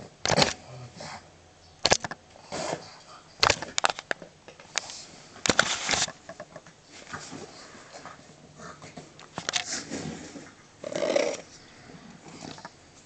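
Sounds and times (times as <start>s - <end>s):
rustling: 4.8s - 6.2s.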